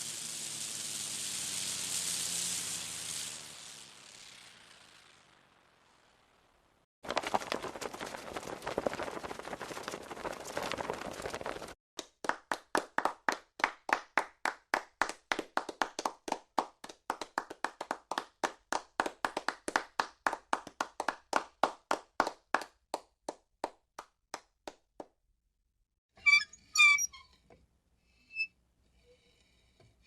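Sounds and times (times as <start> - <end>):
hands clapping: 11.2 - 25.2.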